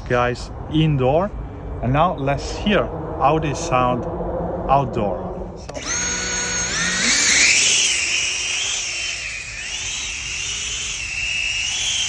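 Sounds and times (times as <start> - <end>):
drone propellers whining: 2.9 - 12.0.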